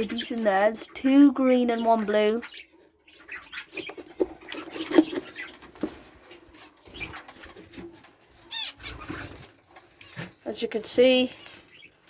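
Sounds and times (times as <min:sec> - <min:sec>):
budgerigars chirping: 0:01.7 - 0:07.3.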